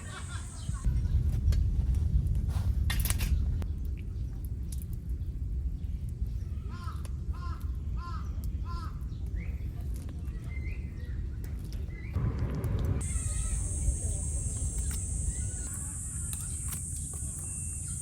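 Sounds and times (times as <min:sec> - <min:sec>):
steady low rumble: 0:12.1 - 0:18.0.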